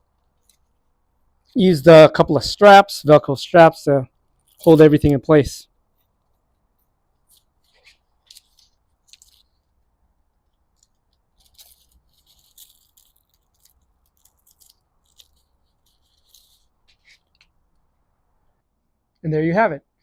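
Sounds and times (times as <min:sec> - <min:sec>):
faint crackling and rustling: 0:00.0 - 0:01.6, 0:04.1 - 0:18.0.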